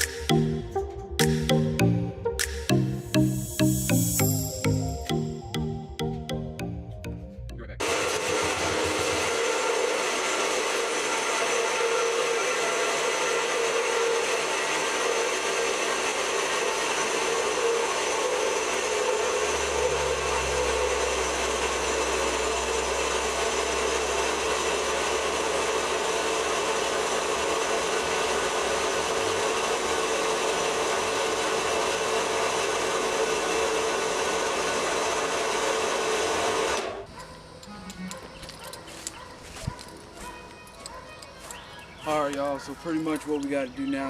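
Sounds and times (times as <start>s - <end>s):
bandsaw cutting metal pipe: 7.9s - 36.8s.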